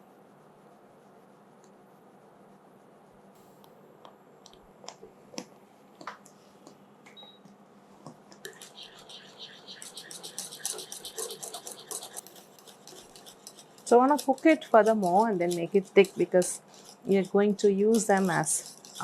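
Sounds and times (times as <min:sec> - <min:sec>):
spatula scraping sticky puree in pan: 0:08.4 - 0:19.0.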